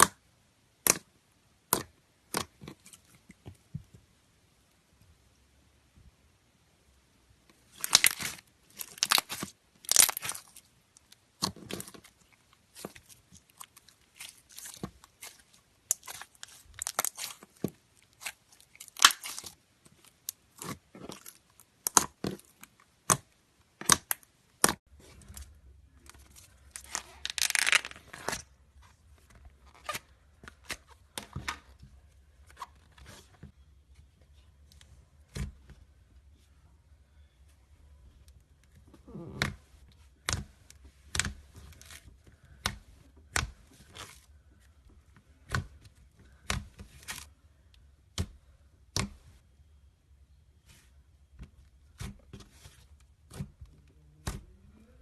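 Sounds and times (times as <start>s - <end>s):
slime crackling and popping: 7.7s - 12.0s, 12.7s - 19.6s, 26.8s - 28.2s.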